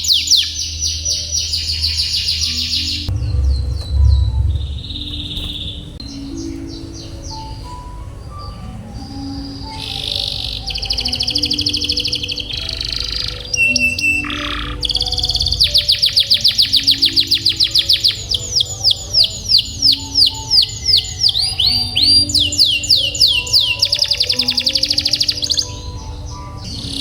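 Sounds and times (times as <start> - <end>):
canary singing trills: 0.0 - 27.0.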